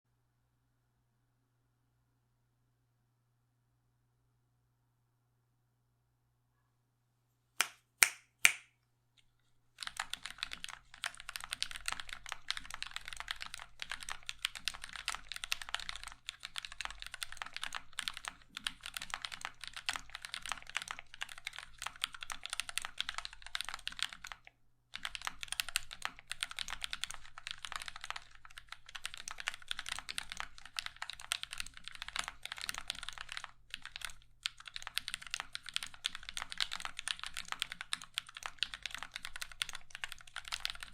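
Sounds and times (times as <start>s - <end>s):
typing on mechanical keyboard: 9.8s - 40.9s.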